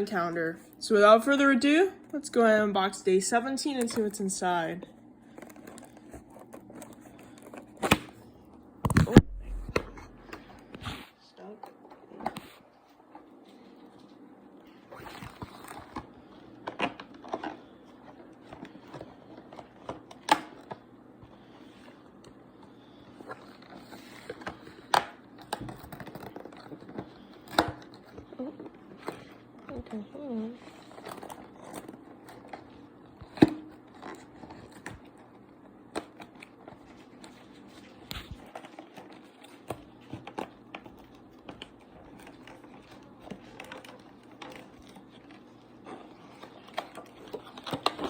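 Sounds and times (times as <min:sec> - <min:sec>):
cardboard snapping: 0:05.4 - 0:08.2
cardboard cracking: 0:08.9 - 0:10.5.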